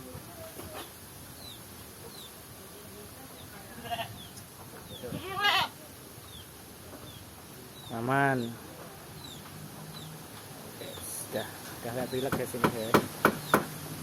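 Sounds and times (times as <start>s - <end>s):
goat bleating: 3.7s - 4.2s, 5.2s - 5.8s.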